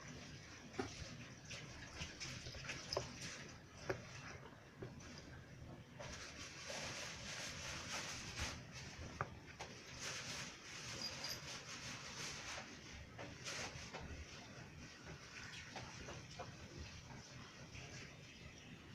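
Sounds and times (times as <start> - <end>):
kitten clicks and rustles: 6.0 - 14.7.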